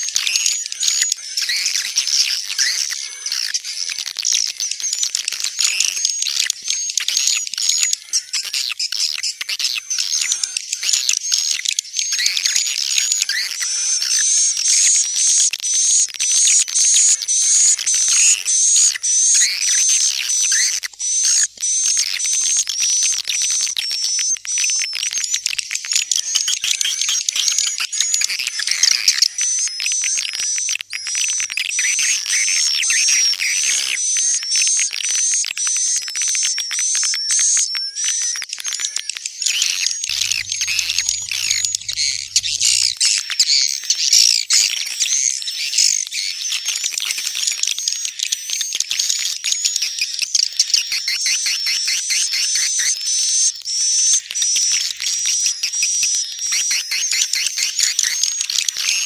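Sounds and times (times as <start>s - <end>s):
swiftlet chirps and twitters: 37.1s - 44.2s
swiftlets chirping: 39.8s - 43.2s.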